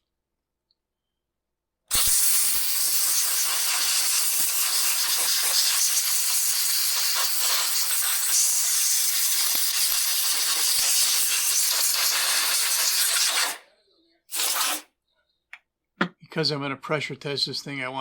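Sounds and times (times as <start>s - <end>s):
compressed air blow gun hissing: 1.9s - 13.6s, 14.3s - 14.9s.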